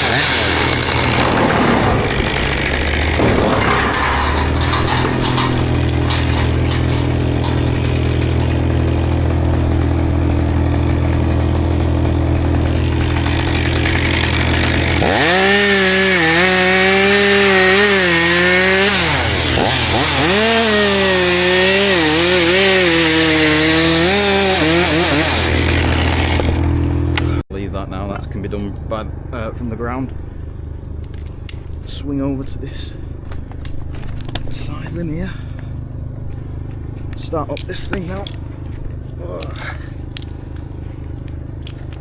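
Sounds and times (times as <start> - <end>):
low engine drone: 0.0 - 15.4, 25.0 - 42.0
chainsaw cutting wood: 0.0 - 27.4.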